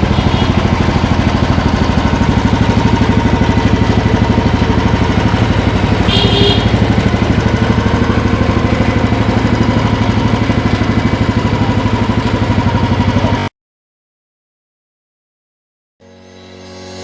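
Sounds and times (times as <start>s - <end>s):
motorcycle engine idling: 0.0s - 13.5s.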